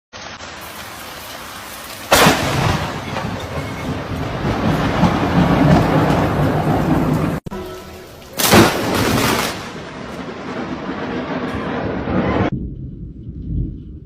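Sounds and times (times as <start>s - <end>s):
rain hiss: 0.1s - 11.0s
lightning strike crack: 0.2s - 7.5s, 8.1s - 14.0s
rolling thunder: 2.1s - 7.5s, 8.4s - 14.0s.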